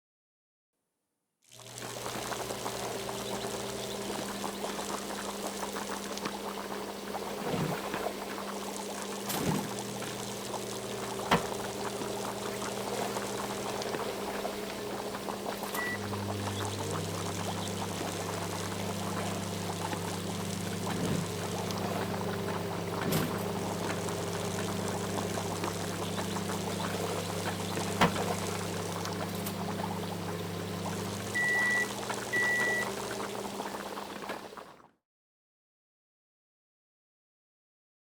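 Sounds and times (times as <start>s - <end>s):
microwave electrical hum: 1.6s - 34.8s
microwave beeps: 15.6s - 34.0s.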